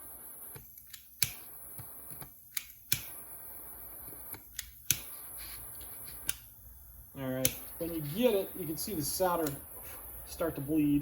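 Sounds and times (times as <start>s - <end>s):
butane torch hissing: 0.0s - 11.0s
sharp clicks: 0.5s - 3.2s.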